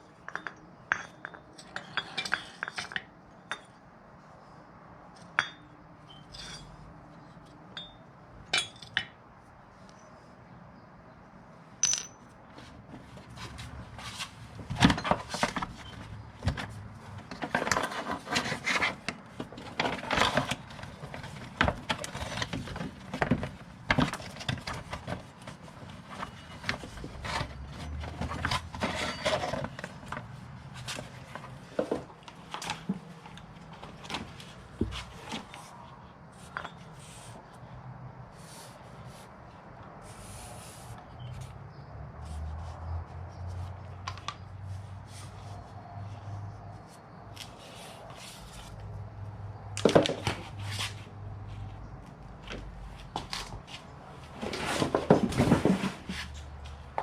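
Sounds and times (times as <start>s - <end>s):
hand tools clinking and scraping: 0.2s - 3.8s, 5.2s - 6.9s, 11.8s - 37.4s.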